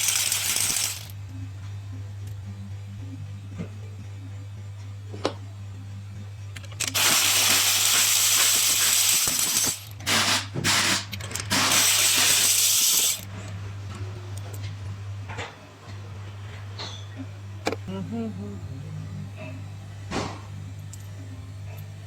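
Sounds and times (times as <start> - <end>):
air blow gun hissing: 7.0 - 13.2.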